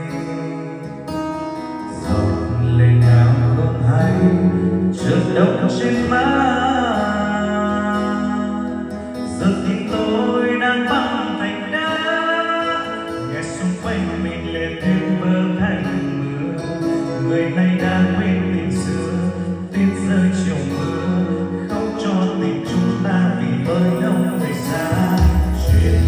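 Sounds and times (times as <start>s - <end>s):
plucked guitar: 0.0s - 26.0s
sustained bass: 1.9s - 10.9s, 17.6s - 26.0s
melodic lead line: 21.3s - 26.0s.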